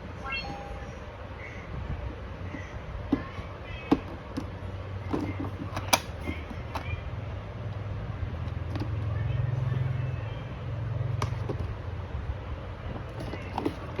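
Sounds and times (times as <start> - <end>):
steady low hum: 0.0 - 14.0
plastic parts clicking and knocking: 2.5 - 7.0, 11.2 - 11.8, 12.9 - 14.0.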